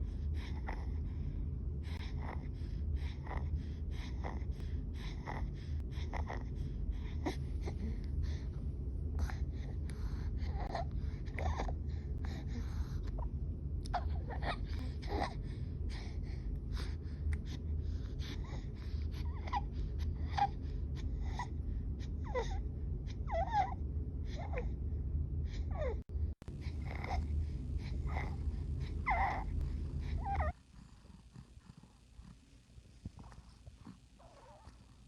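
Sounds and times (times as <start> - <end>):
low hum: 0.0 - 35.0
rapid laboured breathing: 0.0 - 35.0.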